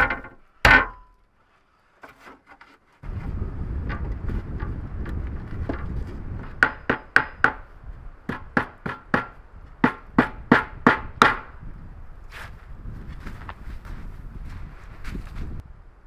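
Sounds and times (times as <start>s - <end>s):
sharp strikes on wood: 0.0s - 1.1s, 5.7s - 7.7s, 8.3s - 11.5s
wind rumble on microphone: 3.0s - 16.0s.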